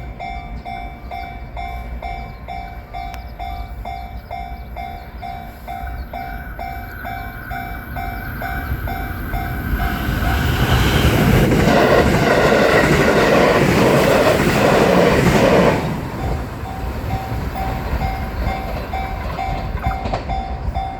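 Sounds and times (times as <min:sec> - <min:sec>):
level crossing warning bell: 0:00.0 - 0:11.3, 0:16.0 - 0:20.9
train rumble with wheel clatter: 0:00.0 - 0:20.9.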